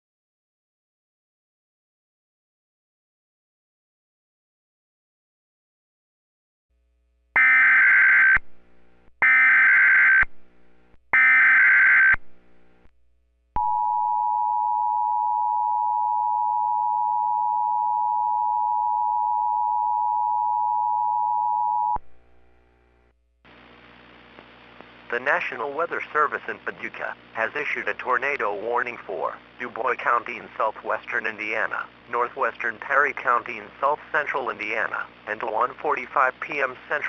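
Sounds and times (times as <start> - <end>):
steady attention tone: 13.6 - 23.1.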